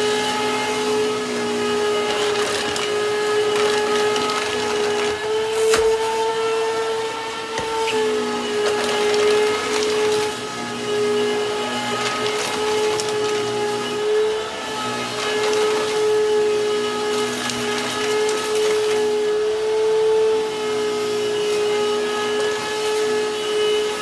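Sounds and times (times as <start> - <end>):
vacuum cleaner motor whine: 0.0 - 24.0.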